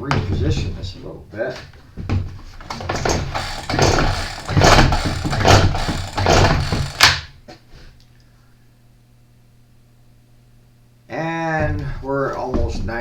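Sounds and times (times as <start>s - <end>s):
recoil starter pulls cranking engine: 2.7s - 7.2s.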